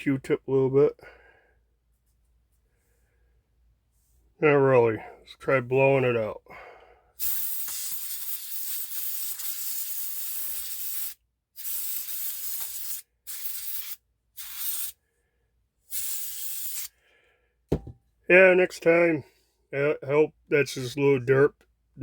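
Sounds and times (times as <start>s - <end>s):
compressed air spraying: 7.2s - 15.0s, 15.9s - 16.9s.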